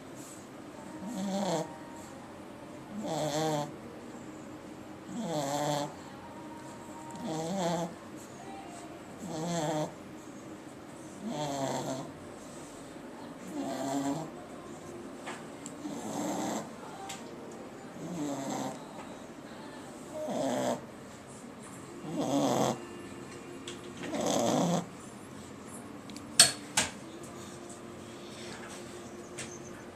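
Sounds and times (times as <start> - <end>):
dog snoring: 1.0 - 1.8, 2.9 - 3.8, 5.1 - 6.1, 7.1 - 8.0, 9.2 - 10.0, 11.2 - 12.2, 13.4 - 14.4, 15.8 - 16.9, 18.0 - 18.9, 20.2 - 20.9, 22.0 - 22.9, 24.0 - 25.0.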